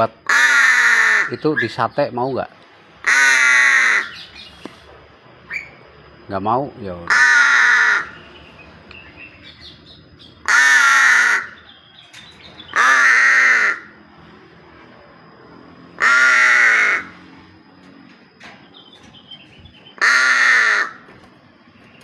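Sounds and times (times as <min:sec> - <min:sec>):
bird harsh calls: 0:03.0 - 0:05.8, 0:07.1 - 0:14.0, 0:16.0 - 0:17.4, 0:18.4 - 0:22.0.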